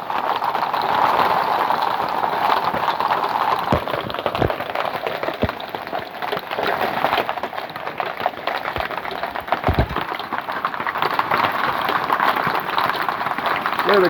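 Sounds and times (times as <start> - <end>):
hailstones clattering: 0.0 - 14.0
louder hail knocks: 8.7 - 10.4.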